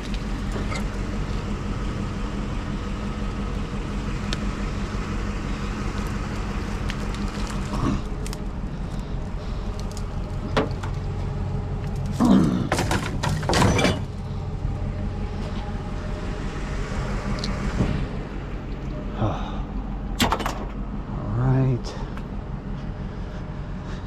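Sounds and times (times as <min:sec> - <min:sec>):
truck engine idling: 0:00.0 - 0:24.0
objects knocking and clattering: 0:12.7 - 0:14.1.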